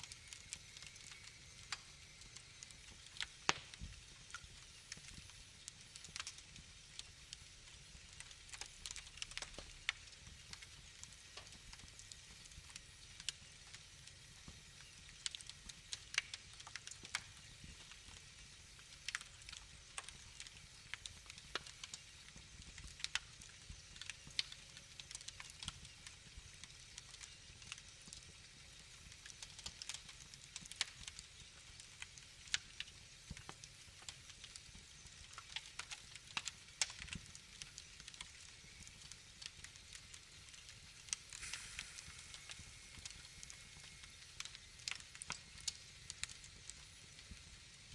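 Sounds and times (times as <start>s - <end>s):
wood fire crackling: 0.0s - 47.9s.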